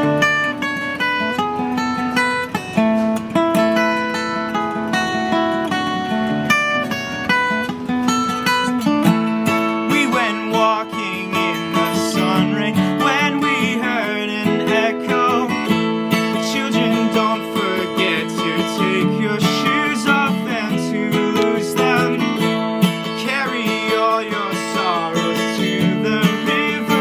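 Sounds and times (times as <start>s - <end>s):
acoustic guitar strumming: 0.0s - 27.0s
man singing: 9.6s - 27.0s.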